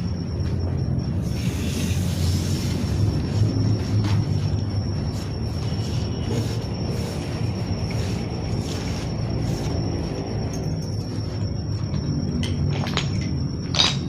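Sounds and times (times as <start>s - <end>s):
high-pitched whine: 0.0s - 14.0s
low mechanical rumble: 0.0s - 14.0s.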